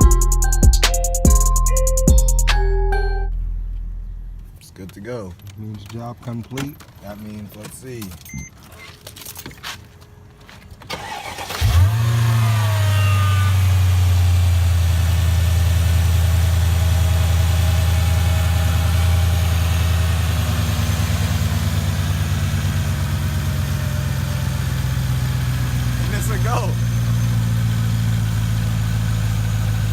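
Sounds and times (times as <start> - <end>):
car engine idling: 3.0 - 5.9, 11.0 - 29.9
car engine cranking on starter: 10.8 - 14.4
engine revving: 11.0 - 29.9.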